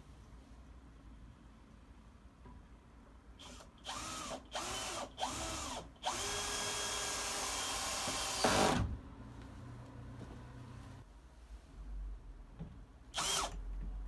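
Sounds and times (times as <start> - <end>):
power drill motor whining: 3.4 - 8.8, 13.2 - 13.6.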